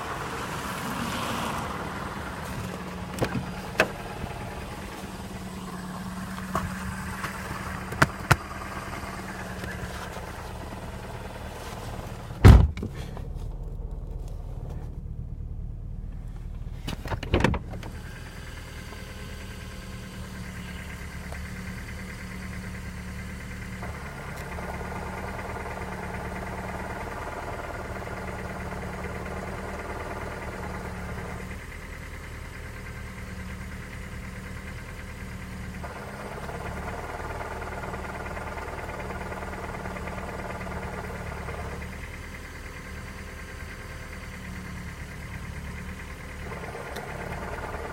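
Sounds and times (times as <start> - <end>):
car engine idling: 0.0 - 47.9
loud thumps: 12.3 - 13.0.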